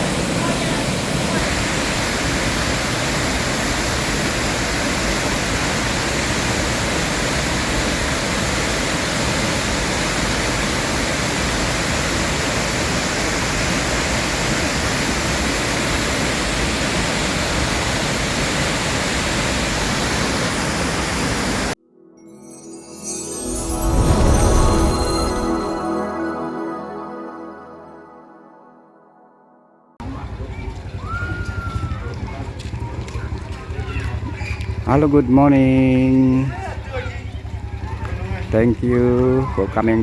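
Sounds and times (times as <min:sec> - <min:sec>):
waterfall roar: 0:00.0 - 0:21.7.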